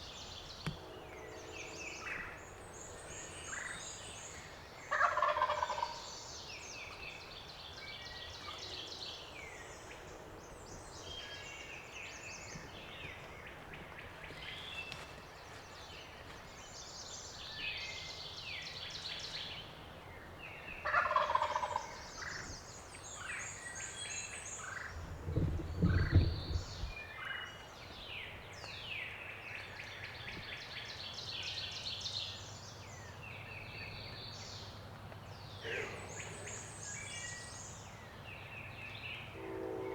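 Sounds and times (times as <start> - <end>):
songbirds singing: 0.0 - 39.9
turkey gobbling: 4.9 - 6.0, 20.8 - 22.0
low thud: 25.1 - 27.0.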